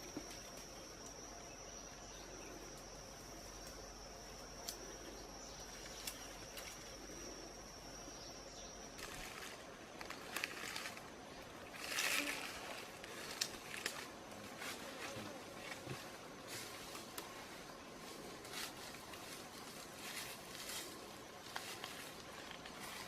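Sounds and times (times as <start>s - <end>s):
cricket trilling: 0.0s - 23.0s.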